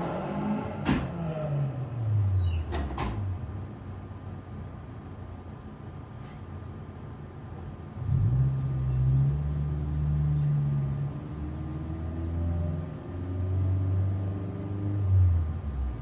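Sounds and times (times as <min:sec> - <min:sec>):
engine accelerating: 0:00.0 - 0:02.1.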